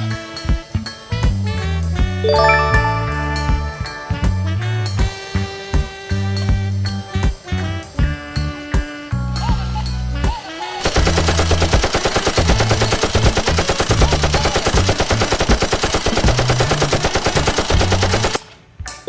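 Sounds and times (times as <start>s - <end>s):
automatic gunfire: 10.8s - 18.4s.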